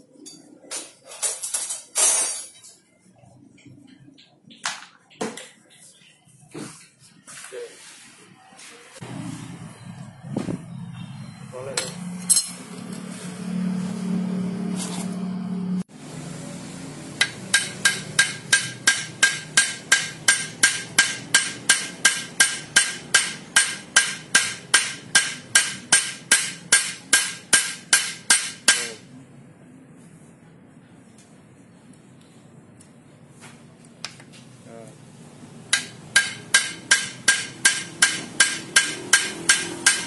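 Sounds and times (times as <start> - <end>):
hammer striking metal rivets: 17.2 - 29.0, 35.7 - 40.0.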